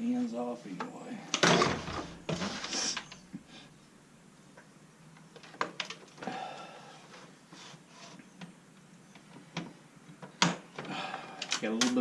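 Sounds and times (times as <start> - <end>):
parts rustling and scraping: 0.2 - 3.7, 6.9 - 8.5.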